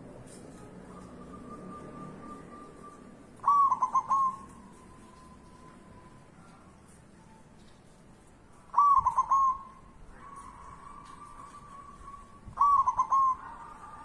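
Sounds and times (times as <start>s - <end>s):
dove cooing: 0.9s - 4.8s, 8.7s - 14.0s.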